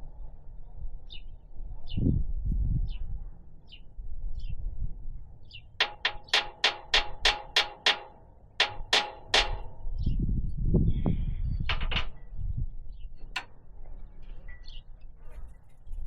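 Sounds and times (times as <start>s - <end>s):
hammer striking metal: 5.8s - 9.9s.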